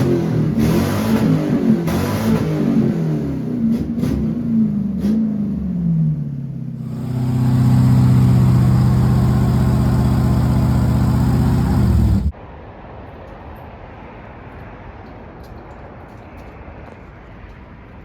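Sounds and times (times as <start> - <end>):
car engine revving: 0.0 - 5.6, 6.8 - 12.3.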